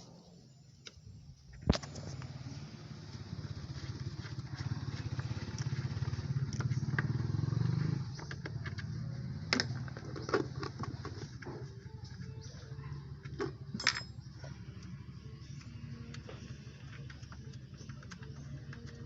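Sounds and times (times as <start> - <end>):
small engine running: 1.7 - 11.4
scattered clicks and knocks: 8.0 - 11.5.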